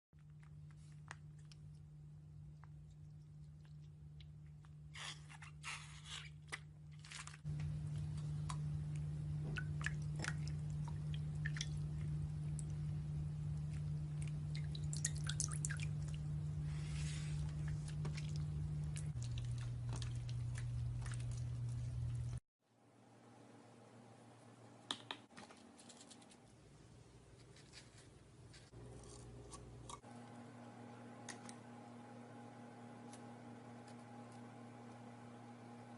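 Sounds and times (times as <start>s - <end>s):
low steady hum: 0.2s - 35.9s
steady low hum: 7.5s - 24.9s.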